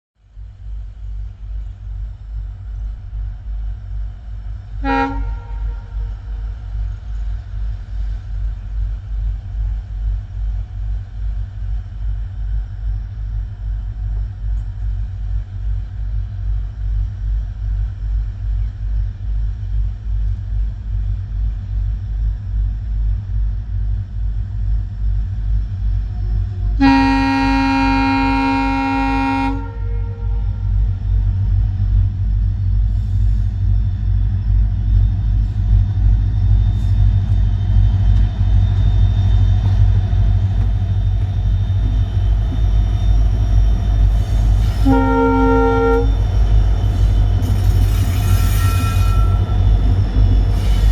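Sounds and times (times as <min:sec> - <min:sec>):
diesel locomotive engines throbbing: 0:00.2 - 0:50.9
locomotive air horn: 0:04.8 - 0:06.2, 0:26.8 - 0:30.7, 0:44.6 - 0:46.2, 0:47.9 - 0:49.7.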